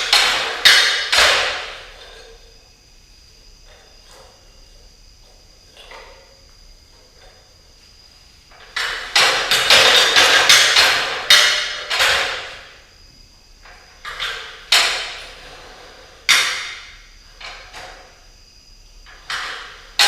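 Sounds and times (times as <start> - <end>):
ladder clattering: 0.0 - 2.4, 8.5 - 12.7.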